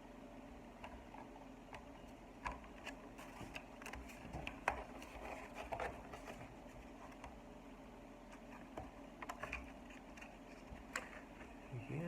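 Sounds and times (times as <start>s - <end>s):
plastic console clicks and taps: 0.8s - 6.3s, 8.6s - 10.0s.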